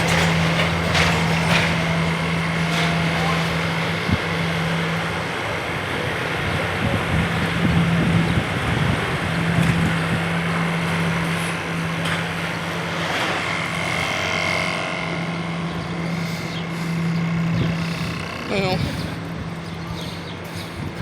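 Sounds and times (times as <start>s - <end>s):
heavy engine running: 0.0s - 21.0s
street noise: 0.0s - 21.0s.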